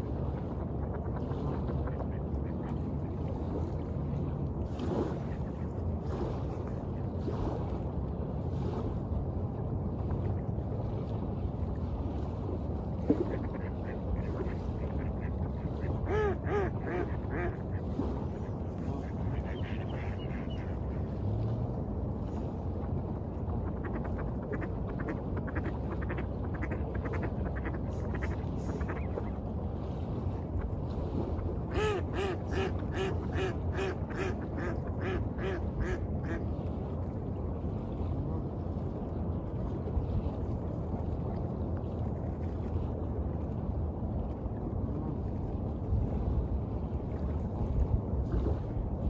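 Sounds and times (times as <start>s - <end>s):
waves rushing: 0.0s - 49.0s
duck quacking: 16.1s - 17.6s.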